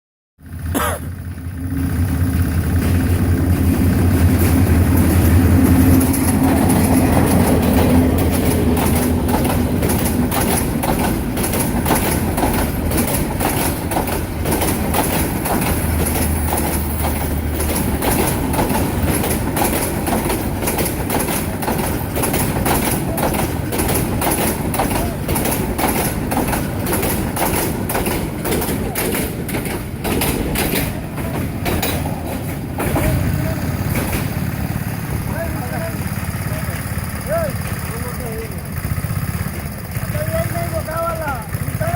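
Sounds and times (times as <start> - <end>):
locomotive engine hum: 0.4 - 41.9
train wheels clattering on rails: 0.4 - 41.9.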